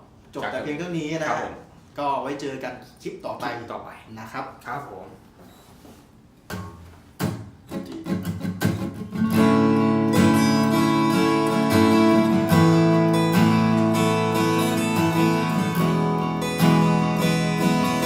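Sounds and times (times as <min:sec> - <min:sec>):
acoustic guitar strumming: 0:06.5 - 0:18.0.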